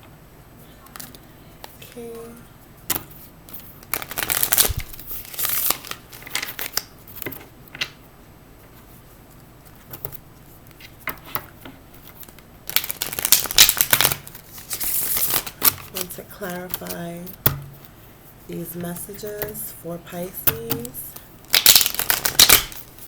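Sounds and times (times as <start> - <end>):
cards being shuffled: 2.9 - 8.0, 9.6 - 19.7, 20.4 - 23.0.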